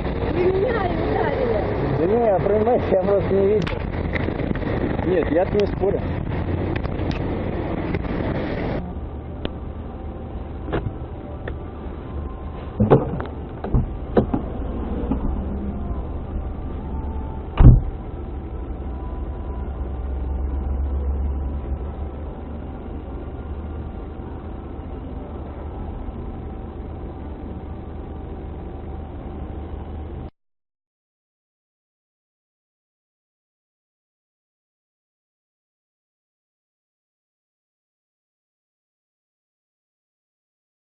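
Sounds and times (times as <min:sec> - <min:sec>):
car engine running: 0:00.0 - 0:30.3
sharp knocks: 0:12.8 - 0:14.5.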